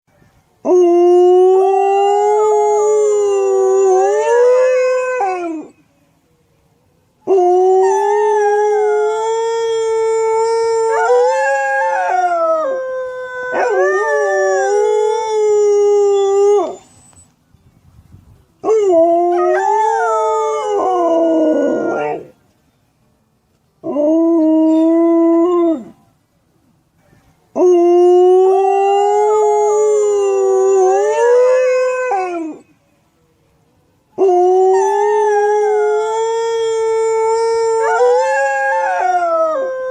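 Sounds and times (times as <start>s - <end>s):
dog howling: 7.3s - 16.9s.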